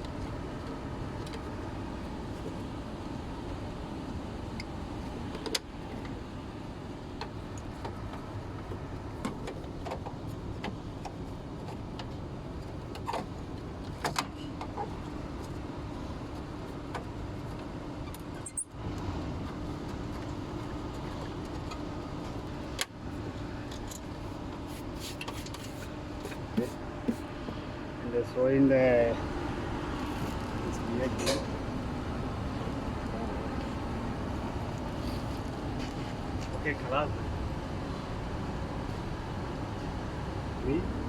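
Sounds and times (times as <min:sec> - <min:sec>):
exhaust fan whirring: 0:00.0 - 0:41.0
steady hum tone: 0:25.6 - 0:41.0.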